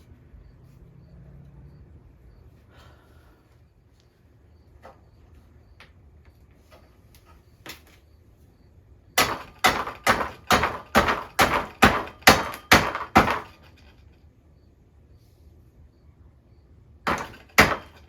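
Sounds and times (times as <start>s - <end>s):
sharp knocks on rack: 9.2s - 13.6s, 17.1s - 18.0s.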